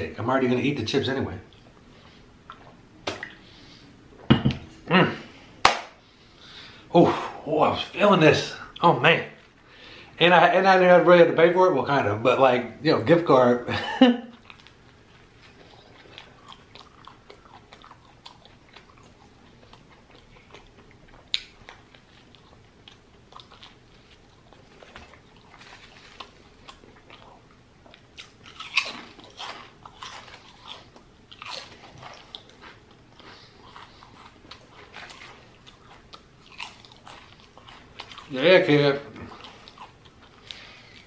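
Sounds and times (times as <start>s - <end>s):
chewing and crunching food: 14.2s - 41.0s.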